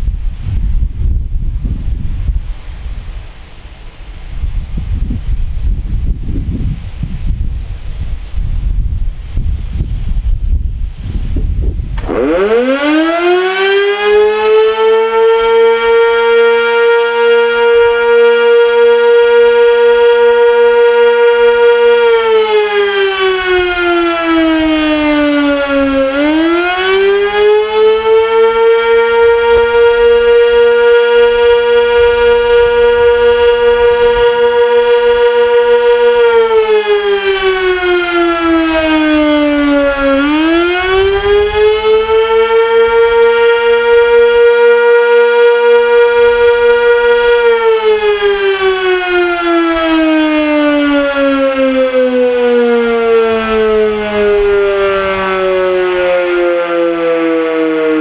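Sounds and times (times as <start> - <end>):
warning siren winding: 11.9 - 58.0.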